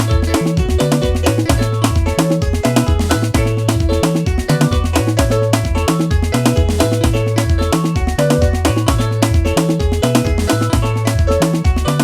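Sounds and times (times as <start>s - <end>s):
drum machine beat: 0.0s - 12.0s
electronic keyboard song: 0.0s - 12.0s.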